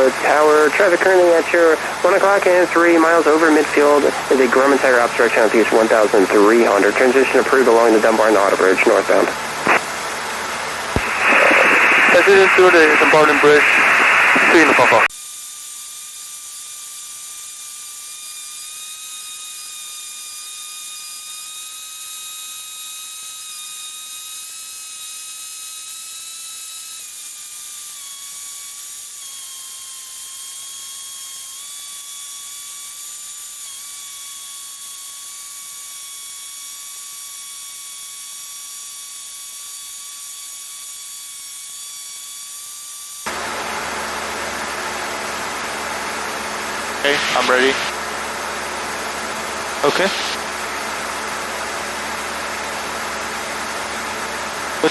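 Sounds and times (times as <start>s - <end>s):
aircraft cabin whine: 0.0s - 10.0s, 10.8s - 15.1s, 43.3s - 48.1s, 49.8s - 50.5s
hiss: 11.0s - 22.3s, 47.0s - 47.9s, 49.8s - 50.4s.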